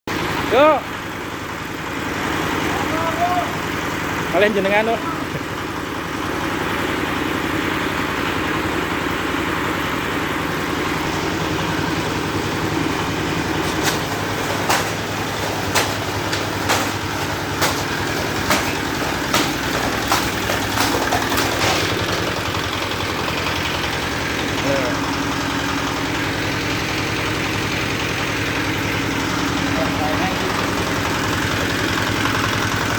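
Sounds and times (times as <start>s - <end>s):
splitting machine engine running: 0.1s - 32.9s
bamboo cracking: 13.4s - 22.4s.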